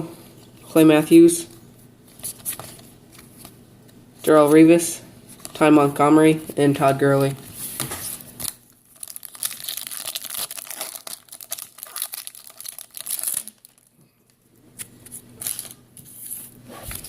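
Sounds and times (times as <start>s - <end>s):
plastic wrapper crinkling and tearing: 8.1s - 14.0s, 15.4s - 15.8s.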